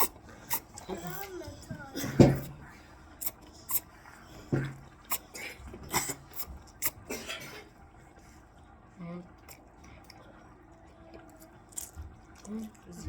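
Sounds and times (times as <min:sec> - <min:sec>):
chewing clicks and mouth smacks: 0:09.4 - 0:12.9.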